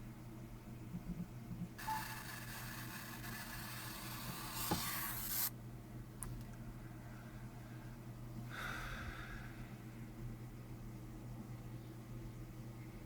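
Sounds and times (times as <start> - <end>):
phone speaker harsh hiss: 1.8 - 5.5.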